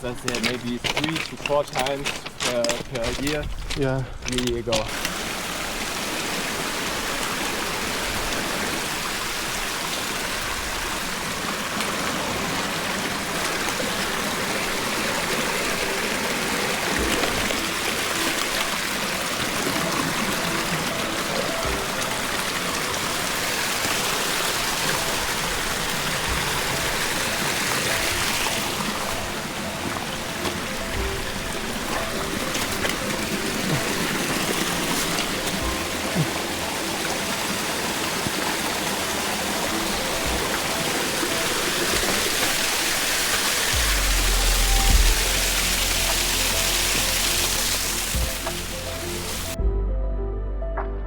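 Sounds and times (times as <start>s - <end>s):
running water: 0.0s - 49.6s
faint music: 12.3s - 51.0s.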